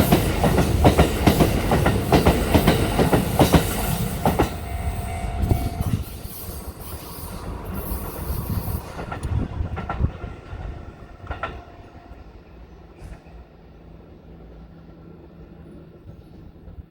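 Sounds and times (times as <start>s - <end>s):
train wheels clacking over rail joints: 0.0s - 4.7s.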